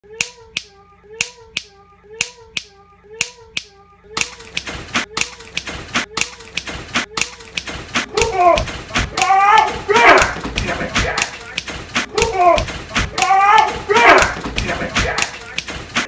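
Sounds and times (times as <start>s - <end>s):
sharp clicks in pairs: 0.2s - 16.0s
electronic beat: 4.2s - 16.0s.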